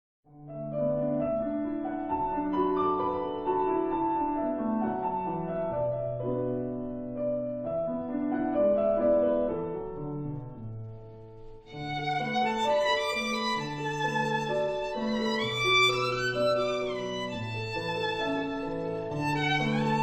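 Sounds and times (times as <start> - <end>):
bowed strings music: 11.4 - 20.0.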